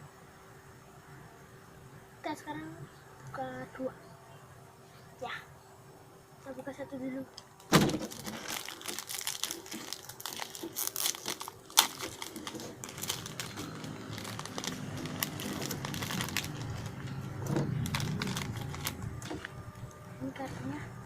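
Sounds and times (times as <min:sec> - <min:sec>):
plastic packaging crinkling: 0:07.6 - 0:20.0.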